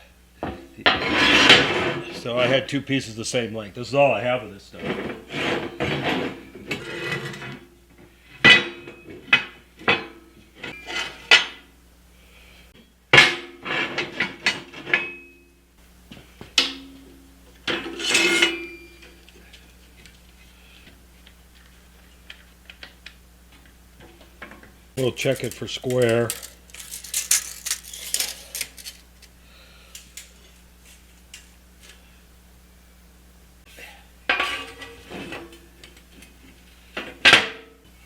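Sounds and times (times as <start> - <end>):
metallic clanks of steel pieces: 17.7 - 19.0, 25.0 - 29.3.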